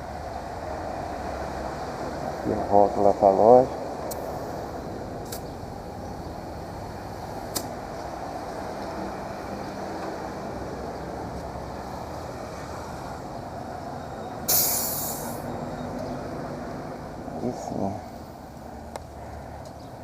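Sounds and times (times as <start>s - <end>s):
street traffic: 0.0s - 20.0s
single click: 7.5s - 7.7s
hiss of escaping air: 14.5s - 15.5s.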